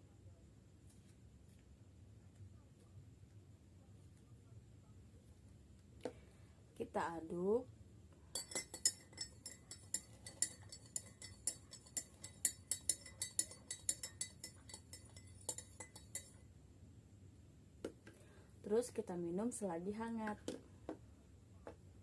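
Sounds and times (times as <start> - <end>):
spoon clinking against glass: 8.3 - 16.4.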